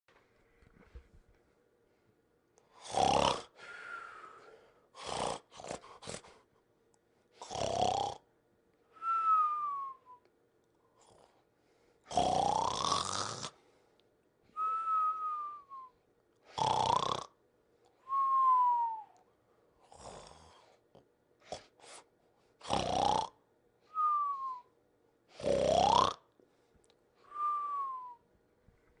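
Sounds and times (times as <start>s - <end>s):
rasping cartoon snore: 2.7s - 3.6s, 5.0s - 6.3s, 7.4s - 8.2s, 11.0s - 11.4s, 12.1s - 13.6s, 16.5s - 17.4s, 19.8s - 20.8s, 21.4s - 23.4s, 25.4s - 26.2s
soft breath: 3.6s - 5.0s
falling whistle: 9.0s - 10.2s, 14.6s - 15.9s, 18.1s - 19.2s, 23.9s - 24.7s, 27.3s - 28.2s.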